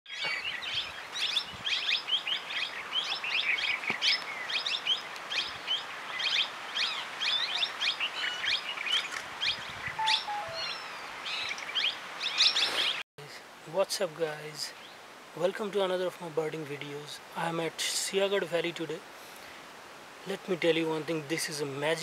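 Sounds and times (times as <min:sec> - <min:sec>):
small birds chirping: 0:00.1 - 0:13.0
low whistled bird notes: 0:09.9 - 0:11.5.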